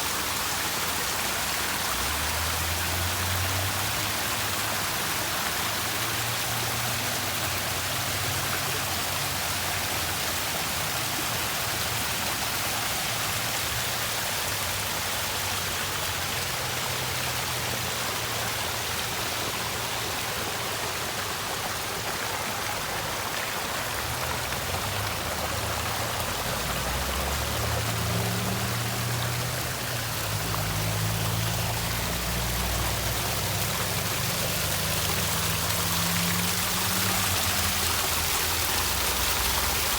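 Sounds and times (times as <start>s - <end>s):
running water: 0.0s - 39.9s.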